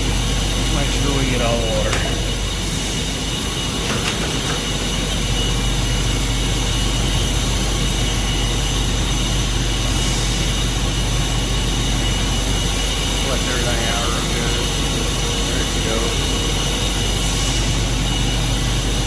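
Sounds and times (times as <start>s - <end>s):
steam and water rushing from valve: 6.0s - 19.0s.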